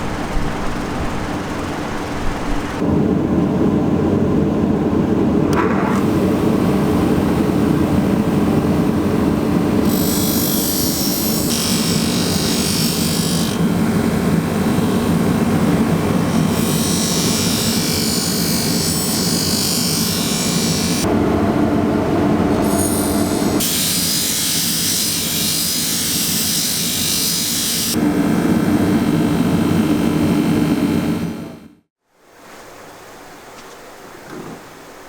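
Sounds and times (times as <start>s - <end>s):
machine humming: 0.0s - 18.3s.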